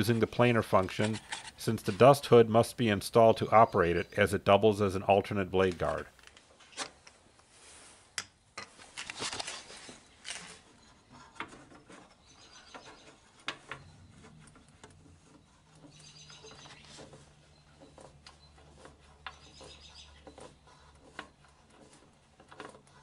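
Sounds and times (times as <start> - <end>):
parts clicking and rustling: 0.0 - 2.4, 5.3 - 7.5, 8.1 - 23.0.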